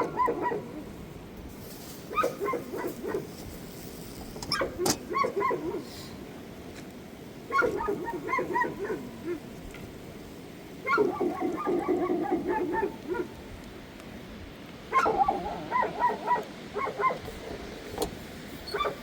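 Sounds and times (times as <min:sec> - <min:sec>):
dog whining and yipping: 0:00.0 - 0:00.8, 0:04.5 - 0:05.8, 0:07.5 - 0:09.4, 0:10.8 - 0:13.3, 0:14.9 - 0:17.6, 0:18.6 - 0:19.0.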